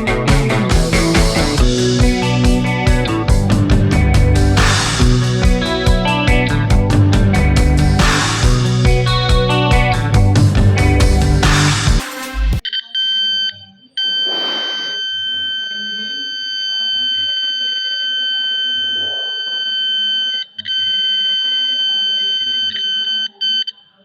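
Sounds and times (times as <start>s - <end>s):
background music: 0.0s - 12.6s
electronic buzzer tone: 14.1s - 20.4s.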